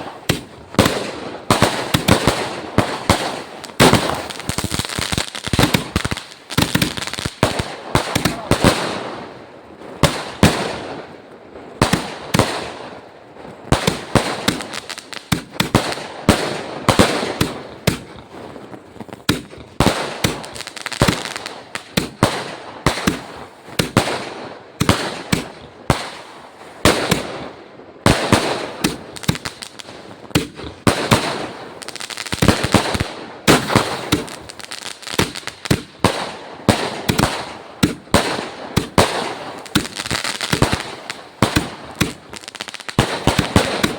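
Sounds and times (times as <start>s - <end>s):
crackling: 0.0s - 8.7s, 28.1s - 43.9s
firecrackers banging: 0.0s - 9.0s, 28.0s - 43.9s.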